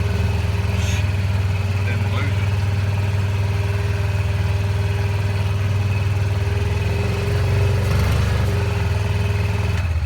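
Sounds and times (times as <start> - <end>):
four-wheeler engine running: 0.0 - 10.0.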